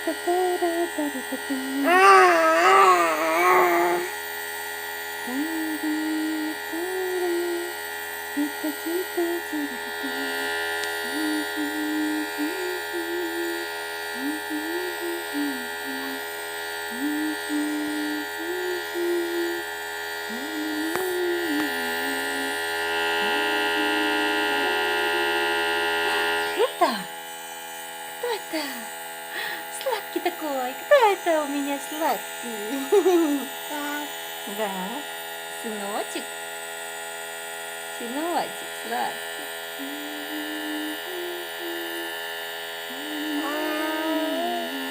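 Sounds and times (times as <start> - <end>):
person humming notes: 0.0 - 4.2, 5.3 - 7.8, 8.4 - 16.3, 16.9 - 25.5, 32.5 - 34.1, 38.9 - 42.2, 42.9 - 44.9
nebulizer buzzing hum: 0.0 - 44.9.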